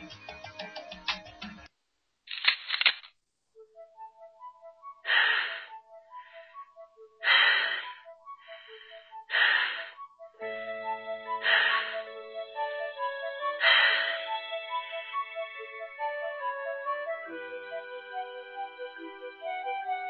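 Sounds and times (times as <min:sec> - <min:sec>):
crackling burst: 0:02.2 - 0:03.3
light sparse music: 0:03.3 - 0:20.0
wheezy breaths: 0:05.0 - 0:10.1, 0:11.2 - 0:15.1.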